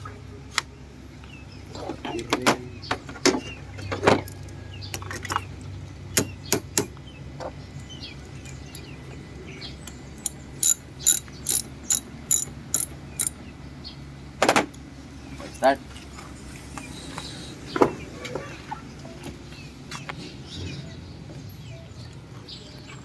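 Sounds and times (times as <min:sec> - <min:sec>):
ratchet wrench clicking: 0:10.2 - 0:13.4.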